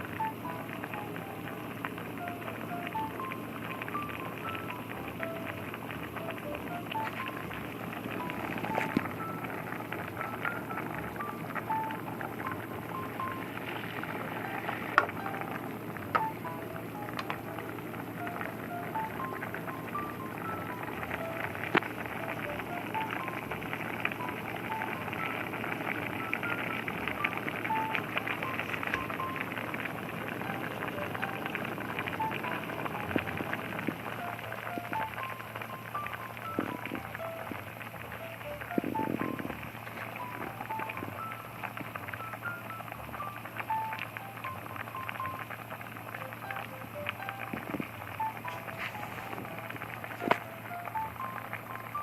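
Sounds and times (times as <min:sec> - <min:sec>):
food simmering in a pan: 0:00.0 - 0:52.0
soft background music: 0:00.0 - 0:52.0
soft melodic notes: 0:00.0 - 0:52.0.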